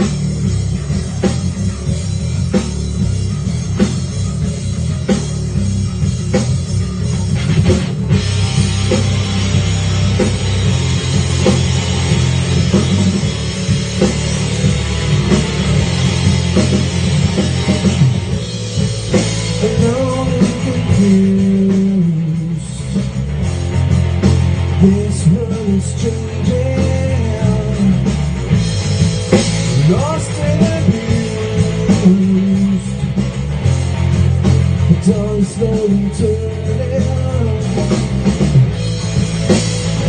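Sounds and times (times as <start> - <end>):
heavy low end: 0.0 - 40.0
rock drum beat: 0.0 - 40.0.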